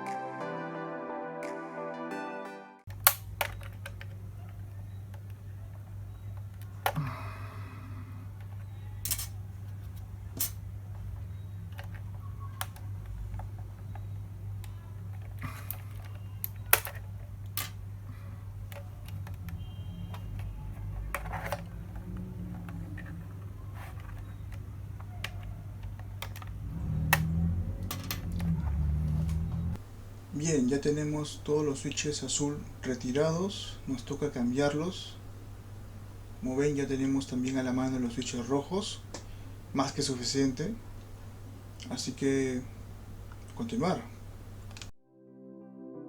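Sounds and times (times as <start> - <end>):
steady low hum: 2.9 - 44.9
sharp plastic clicks of keyboard switches: 11.7 - 17.8, 24.0 - 27.4.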